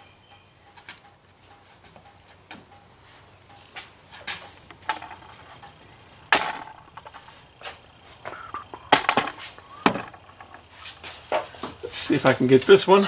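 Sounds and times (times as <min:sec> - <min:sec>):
clicks of fuel line couplings: 0:02.0 - 0:12.6.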